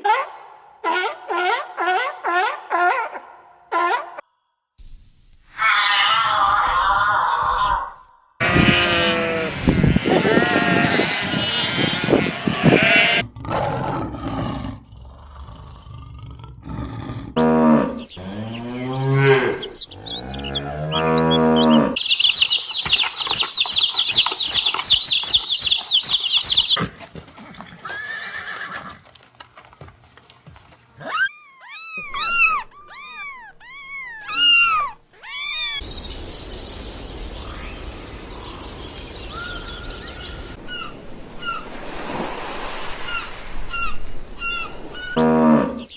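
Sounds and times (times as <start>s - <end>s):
quick arching chirps: 18.6s - 26.8s, 31.4s - 41.7s
low drawn-out animal calls: 31.0s - 35.9s
steady rushing noise: 35.8s - 44.9s.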